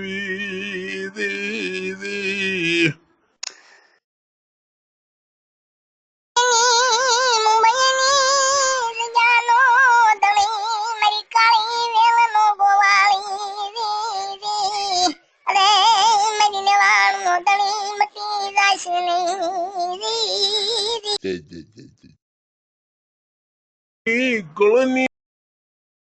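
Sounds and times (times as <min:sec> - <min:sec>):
high voice singing with vibrato: 0:00.0 - 0:03.0, 0:06.4 - 0:22.1.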